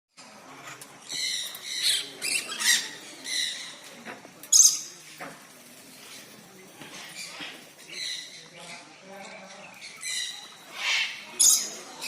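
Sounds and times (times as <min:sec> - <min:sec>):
parrots squawking: 0:00.6 - 0:03.7, 0:09.8 - 0:12.0.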